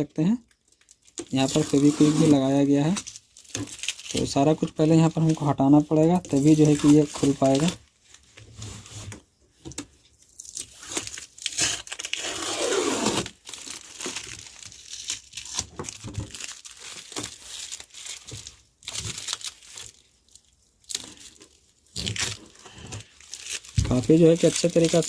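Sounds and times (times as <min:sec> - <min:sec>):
adhesive tape ripping: 0:01.2 - 0:04.2, 0:10.4 - 0:18.2, 0:21.9 - 0:22.6.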